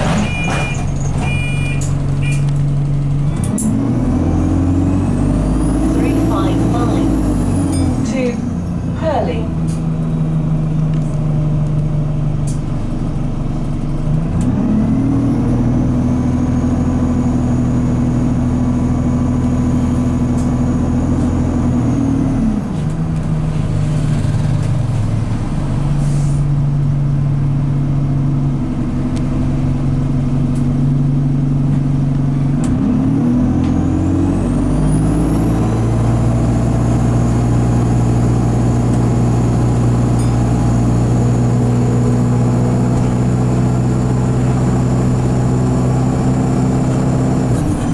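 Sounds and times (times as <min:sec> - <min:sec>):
bus diesel engine revving: 0:00.0 - 0:47.9.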